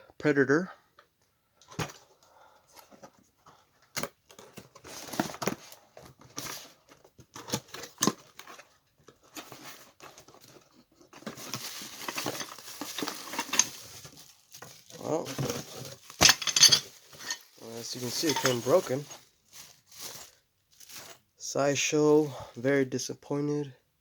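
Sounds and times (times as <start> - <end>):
packing material rustling and tearing: 4.0 - 21.3
cardboard box being opened: 4.3 - 16.2.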